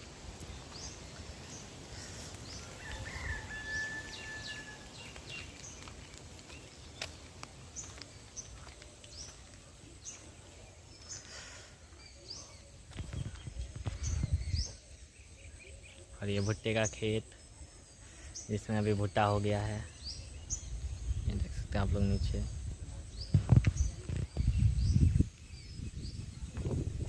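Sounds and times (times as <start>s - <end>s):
birds chirping: 0.0s - 27.0s.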